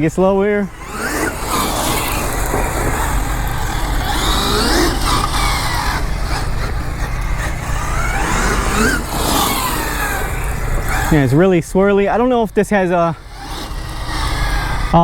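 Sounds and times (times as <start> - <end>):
rc car motor whining: 0.0 - 15.0
steady running rumble: 0.0 - 15.0.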